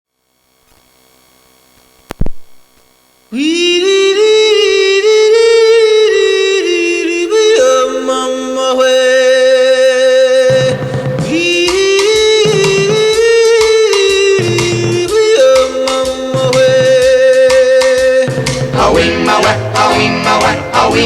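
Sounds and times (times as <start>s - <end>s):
person singing long held notes: 3.3s - 21.0s.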